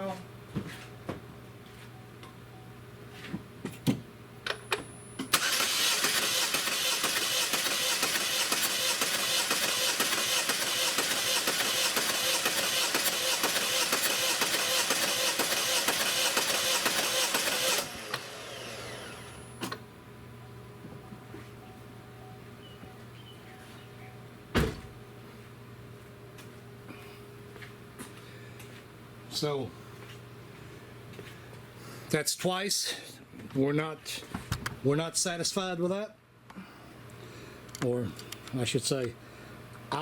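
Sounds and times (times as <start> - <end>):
car engine cranking on starter: 5.2 - 19.7.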